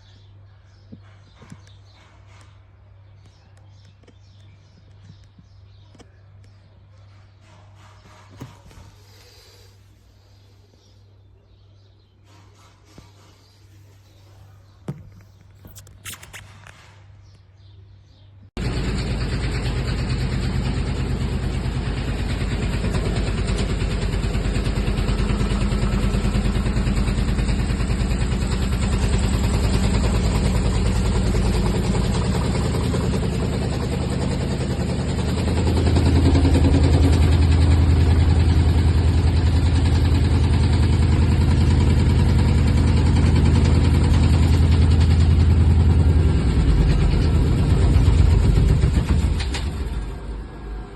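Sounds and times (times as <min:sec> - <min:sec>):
washing machine running: 0:18.6 - 0:50.9.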